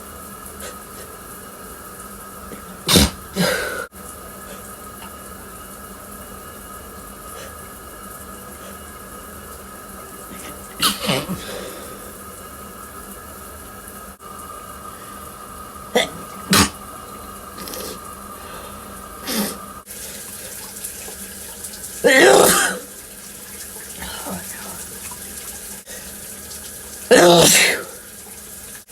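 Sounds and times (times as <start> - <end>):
person sneezing: 2.5 - 3.9, 10.3 - 12.0, 16.0 - 16.8, 19.2 - 19.6, 22.0 - 22.9, 27.1 - 28.0.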